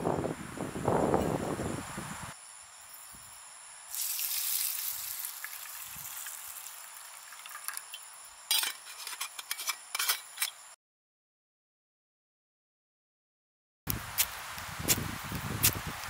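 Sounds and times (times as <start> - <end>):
food sizzling in a pan: 3.9 - 8.2
oil pops and crackles: 4.0 - 8.0.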